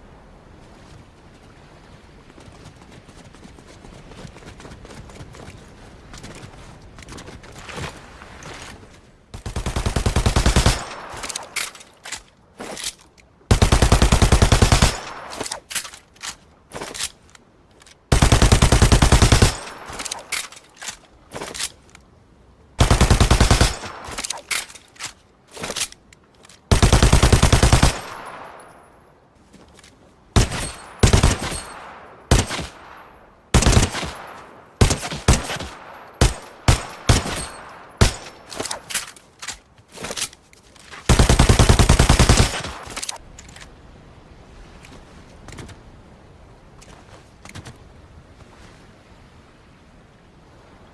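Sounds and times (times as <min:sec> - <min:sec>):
machine pistol firing: 0:09.4 - 0:11.4, 0:13.5 - 0:15.3, 0:26.7 - 0:28.3, 0:33.6 - 0:34.2, 0:41.1 - 0:43.2.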